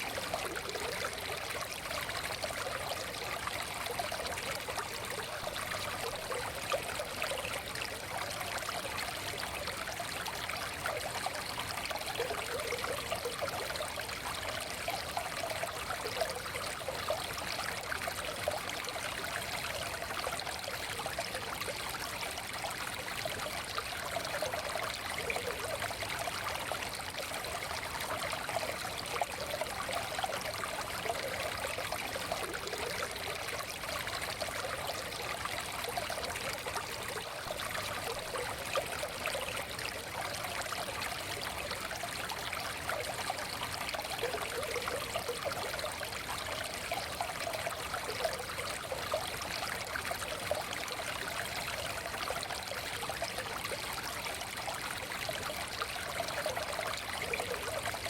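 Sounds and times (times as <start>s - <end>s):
stream flowing over rocks: 0.0s - 58.0s.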